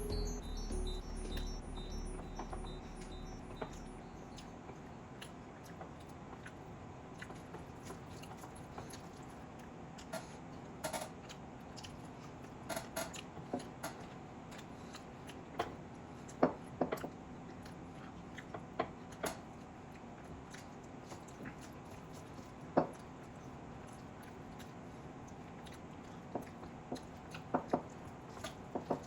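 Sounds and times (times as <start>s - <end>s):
wet chewing sounds: 2.3s - 29.0s.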